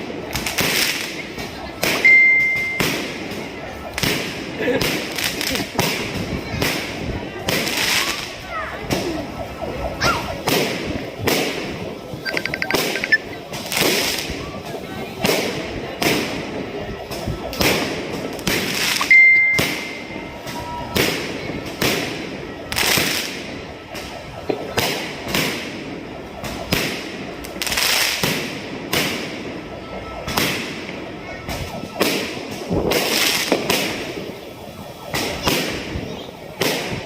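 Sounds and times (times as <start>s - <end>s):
fireworks exploding: 0.1s - 37.0s
firework high whistle: 1.8s - 4.3s, 17.2s - 34.3s.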